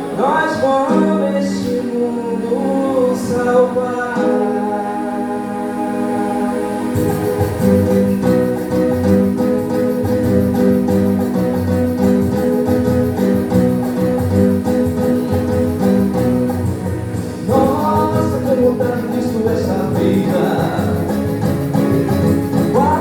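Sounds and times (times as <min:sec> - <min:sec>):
sustained pitched notes: 0:00.9 - 0:23.0
pulsing bass line: 0:07.0 - 0:23.0.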